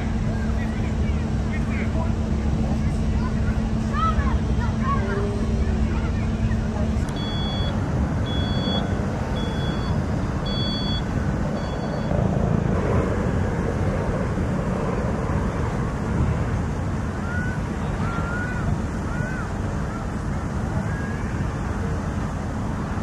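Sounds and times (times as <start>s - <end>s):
steady low rumbling: 0.0s - 23.0s
high two-tone beeps: 7.1s - 12.1s.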